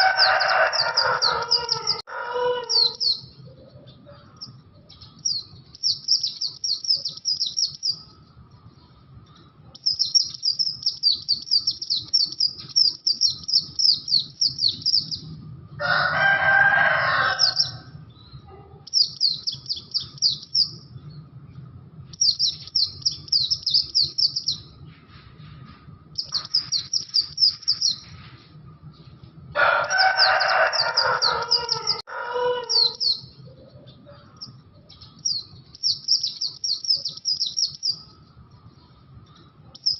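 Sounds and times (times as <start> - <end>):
rooster crowing: 0.0 - 3.1, 15.8 - 18.0, 29.5 - 33.1
songbird chirping trills: 0.0 - 16.1, 16.8 - 39.9.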